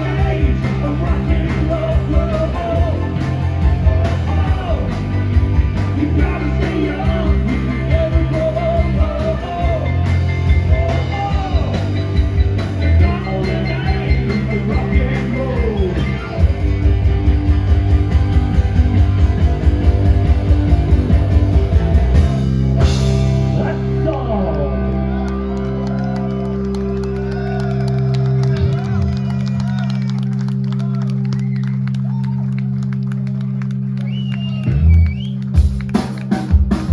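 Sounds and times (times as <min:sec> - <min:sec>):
person singing lead vocal: 0:00.0 - 0:16.5
live rock band playing: 0:00.0 - 0:32.0, 0:34.6 - 0:36.9.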